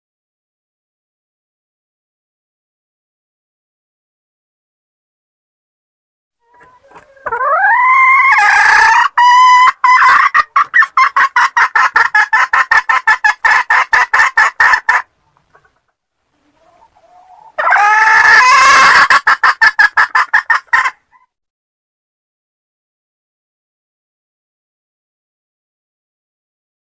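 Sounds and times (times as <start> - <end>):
hen cackling: 6.4 - 21.3.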